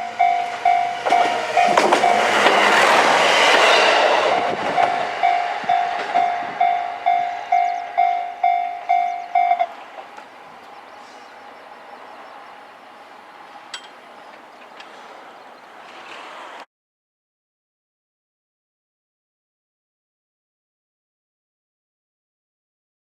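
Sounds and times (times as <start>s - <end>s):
level crossing warning bell: 0.0s - 2.9s, 4.2s - 15.6s
diesel railcar passing: 0.0s - 16.7s.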